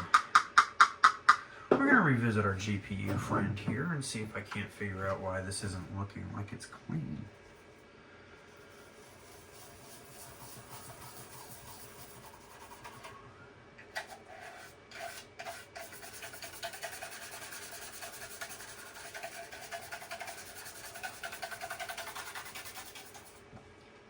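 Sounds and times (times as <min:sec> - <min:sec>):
toothbrush scrubbing: 0:08.6 - 0:13.1, 0:14.0 - 0:23.4.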